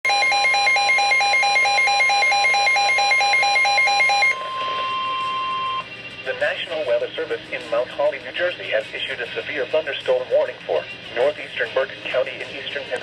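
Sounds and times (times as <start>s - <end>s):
steady alarm tone: 0.0s - 5.9s
two-note electronic alarm beep: 0.1s - 5.9s.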